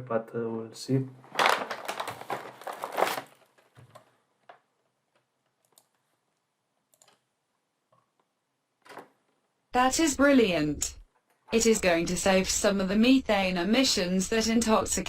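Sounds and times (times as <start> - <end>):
bag crinkling: 1.3 - 4.6.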